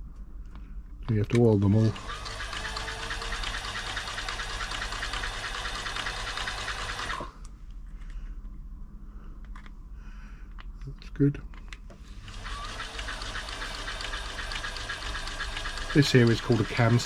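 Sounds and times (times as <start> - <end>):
sewing machine running: 1.8 - 7.4, 12.1 - 17.0.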